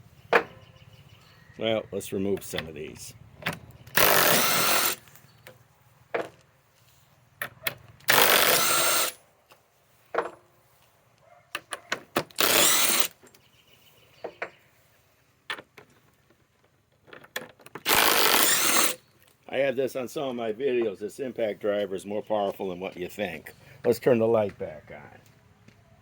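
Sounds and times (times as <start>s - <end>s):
impact driver backing out screws: 3.4s - 5.1s, 8.0s - 9.2s, 12.1s - 13.2s, 17.6s - 19.0s.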